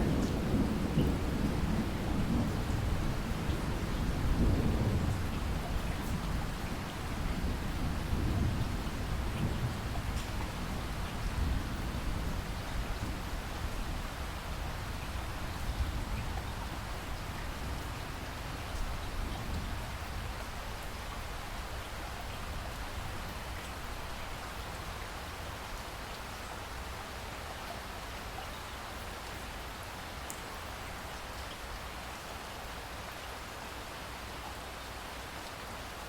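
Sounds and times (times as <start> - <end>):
thunder rumble: 0.0 - 14.0
heavy rain falling on water: 0.0 - 36.0.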